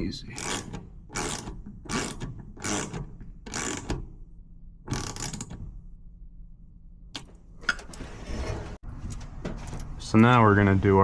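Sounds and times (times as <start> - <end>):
ratchet wrench clicking: 0.4 - 3.9, 4.9 - 5.5.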